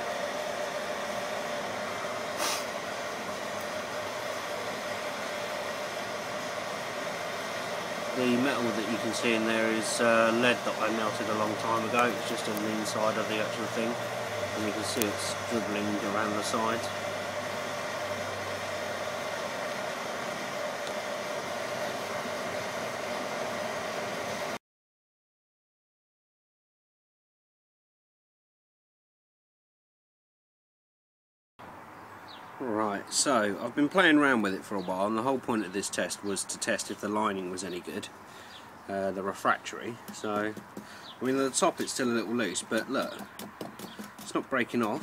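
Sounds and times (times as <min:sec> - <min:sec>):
forced air rushing into furnace: 0:00.0 - 0:24.6
motor whine: 0:00.0 - 0:24.6
steady hum: 0:00.0 - 0:24.6
short hiss of noise: 0:02.3 - 0:02.8.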